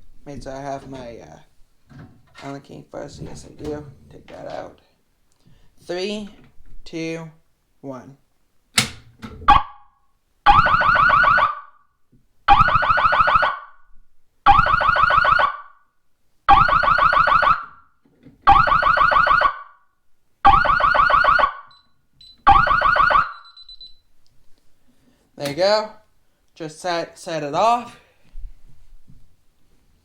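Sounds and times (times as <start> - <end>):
fire alarm siren blasts: 9.5 - 11.9, 12.5 - 13.8, 14.5 - 15.8, 16.5 - 17.9, 18.5 - 19.8, 20.4 - 24.0.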